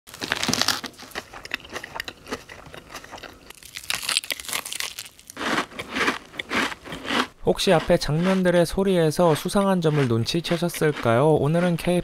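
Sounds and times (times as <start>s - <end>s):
fried chicken crunching: 0.1s - 12.0s.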